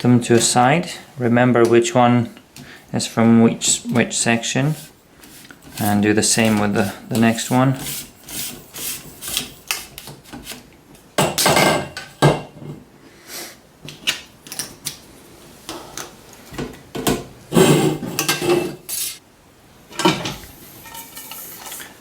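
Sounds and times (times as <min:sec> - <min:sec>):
pole sections sliding scrapes: 0:04.6 - 0:09.6.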